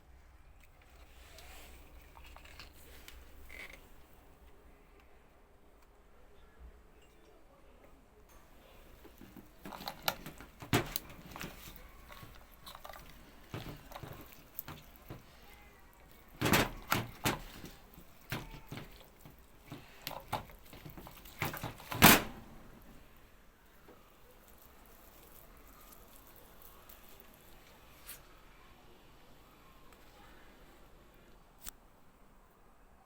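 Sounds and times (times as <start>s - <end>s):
objects being handled: 0.6s - 4.6s, 8.3s - 28.2s.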